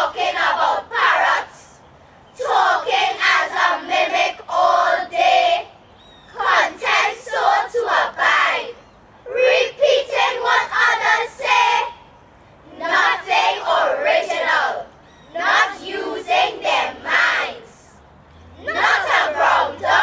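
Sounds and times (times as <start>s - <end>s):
young voices reciting in unison: 0.0s - 20.0s.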